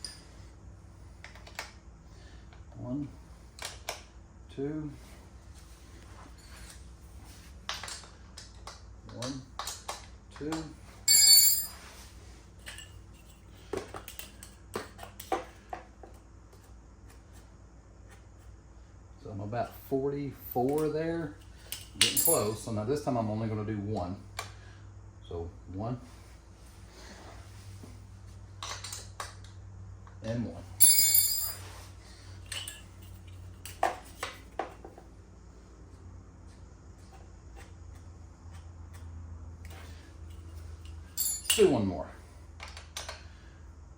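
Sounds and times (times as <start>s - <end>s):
faint steady hum: 0.0s - 43.9s
tools clicking and knocking: 7.7s - 11.7s, 12.6s - 17.2s, 20.6s - 20.9s, 30.8s - 31.6s, 32.4s - 35.1s, 37.1s - 41.7s, 42.6s - 43.3s
drive chain being handled: 11.0s - 14.7s, 20.4s - 22.7s, 30.8s - 34.3s, 39.7s - 41.8s.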